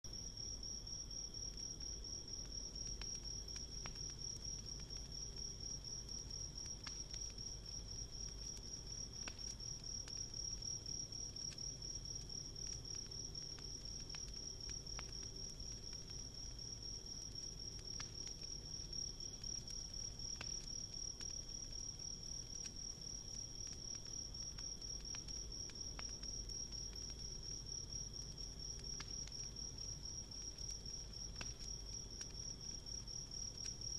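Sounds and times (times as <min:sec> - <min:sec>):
campfire crackling: 0:00.1 - 0:33.9.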